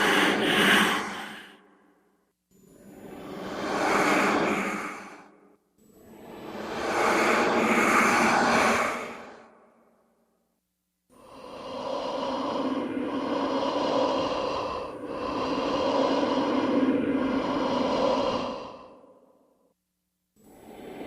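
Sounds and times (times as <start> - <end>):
ghostly breath with ringing hum: 0.0 - 19.8, 20.4 - 21.0.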